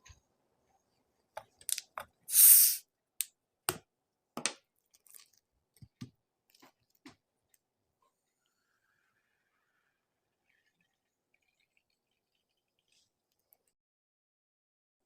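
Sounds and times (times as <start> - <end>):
hiss of escaping gas: 2.3 - 2.8.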